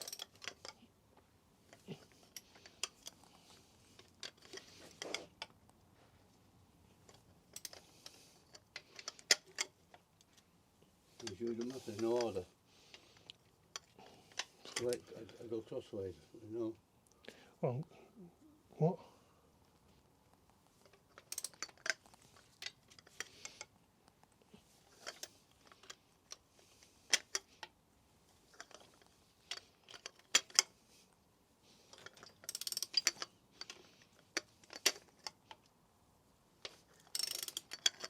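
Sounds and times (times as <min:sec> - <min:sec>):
metallic clinks of tools: 0:00.0 - 0:00.8
socket ratchet clicking: 0:21.2 - 0:22.0, 0:32.2 - 0:33.2, 0:37.0 - 0:38.0.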